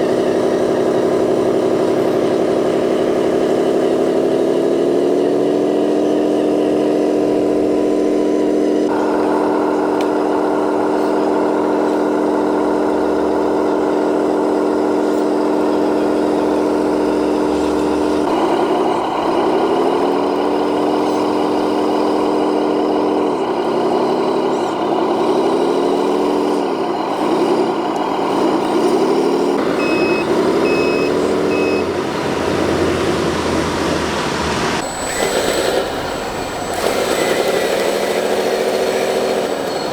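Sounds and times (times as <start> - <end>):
reversing beeps: 29.6 - 31.9
mechanical whine of model vehicle: 34.7 - 39.9.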